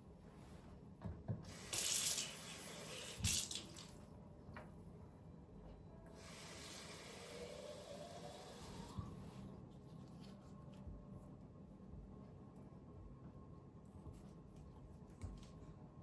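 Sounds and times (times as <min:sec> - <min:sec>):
water running from a tap: 0:01.5 - 0:04.0.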